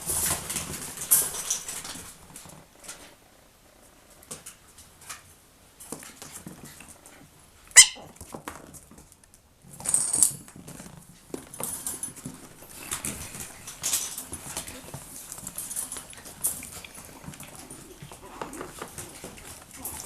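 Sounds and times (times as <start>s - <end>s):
puppies scrabbling and pattering: 0.0s - 20.0s
high-pitched puppy yelp: 7.8s - 8.1s.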